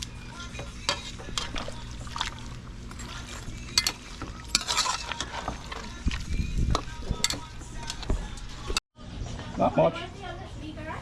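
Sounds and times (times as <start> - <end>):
metal spoon scraping pot: 0.5 - 2.3, 2.9 - 8.4.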